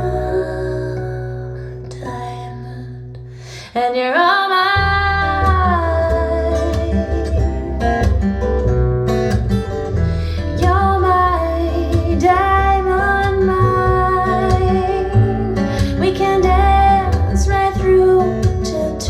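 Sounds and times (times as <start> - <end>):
plucked acoustic guitar: 0.0 - 3.4, 4.7 - 19.0
bass: 0.0 - 3.8, 4.5 - 19.0
person singing: 3.6 - 8.2, 10.4 - 19.0.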